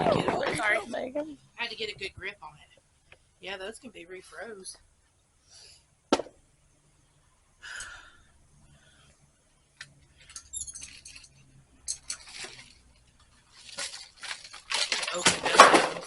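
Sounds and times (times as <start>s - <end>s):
clinks and rustling packages: 9.8s - 16.0s.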